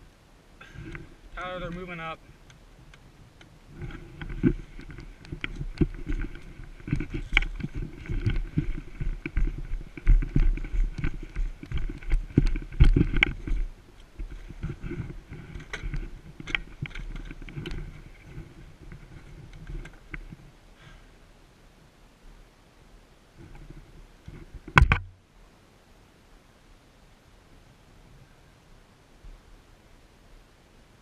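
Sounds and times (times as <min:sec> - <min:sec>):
camera knocks and thuds: 0:03.8 - 0:17.9, 0:24.6 - 0:25.1.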